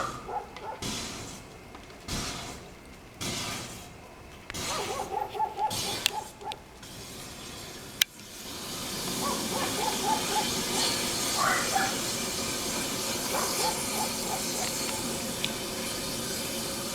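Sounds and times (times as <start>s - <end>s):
dog barking: 0.0s - 0.9s, 4.0s - 6.7s, 9.1s - 12.1s, 13.2s - 15.4s
fire hissing: 0.0s - 16.9s
sharp cracks and pops: 0.4s - 7.0s, 13.2s - 16.2s.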